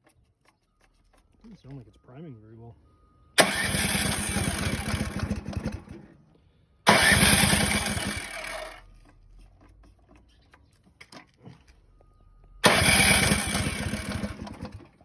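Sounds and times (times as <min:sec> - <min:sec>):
snowblower engine cranking: 0:03.4 - 0:06.2, 0:06.9 - 0:09.2, 0:12.6 - 0:15.0.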